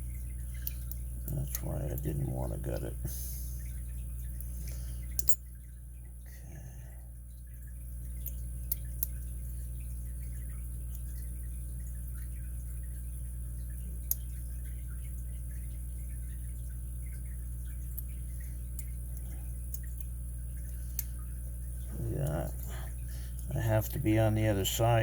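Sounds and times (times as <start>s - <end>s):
low steady hum: 0.0s - 25.0s
lock-picking tools clicking: 5.2s - 5.4s.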